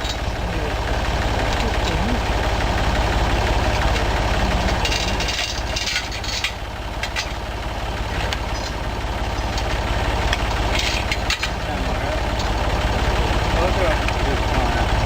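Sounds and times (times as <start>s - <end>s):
car engine idling: 0.0s - 15.0s
hissing clattering noises: 1.1s - 13.4s.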